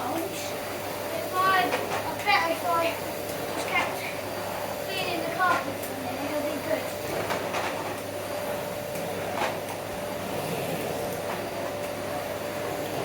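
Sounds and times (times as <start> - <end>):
vacuum cleaner whining: 0.0 - 13.0.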